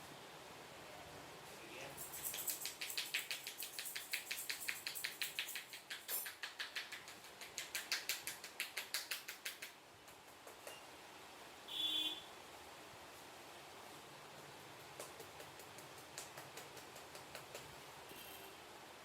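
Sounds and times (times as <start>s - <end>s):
hands slapping during head massage: 2.0s - 10.8s, 14.7s - 17.9s.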